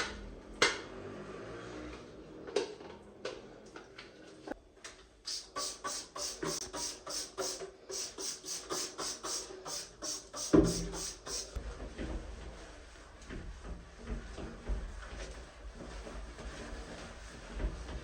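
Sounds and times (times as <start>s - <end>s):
short hissing strokes: 5.3s - 11.6s.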